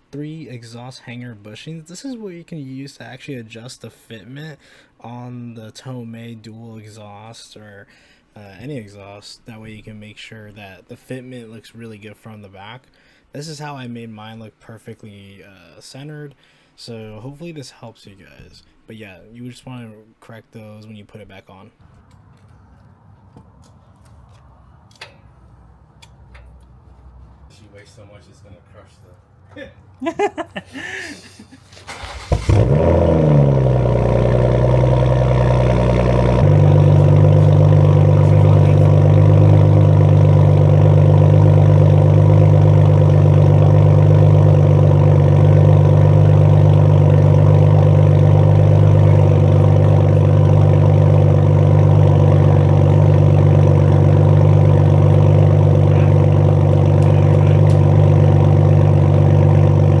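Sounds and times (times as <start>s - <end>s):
car engine starting and idling: 21.8s - 29.4s, 31.7s - 60.0s.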